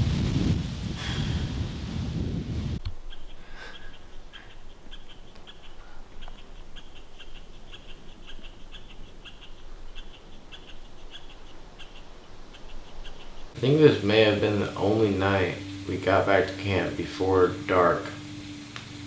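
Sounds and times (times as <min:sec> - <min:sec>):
faint outdoor hiss: 0:02.8 - 0:19.0
high-pitched chirping: 0:03.0 - 0:16.0.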